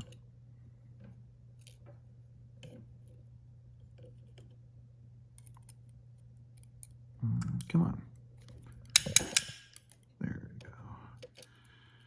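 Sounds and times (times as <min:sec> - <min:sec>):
steady low hum: 0:00.0 - 0:12.0
tools clicking on lock parts: 0:08.8 - 0:10.1, 0:11.2 - 0:11.5.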